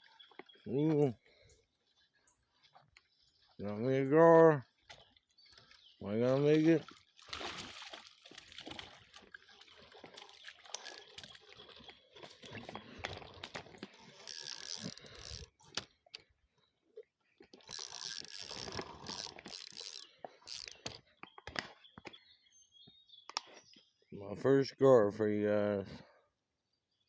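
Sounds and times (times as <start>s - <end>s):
river water splashing: 6.4s - 15.4s.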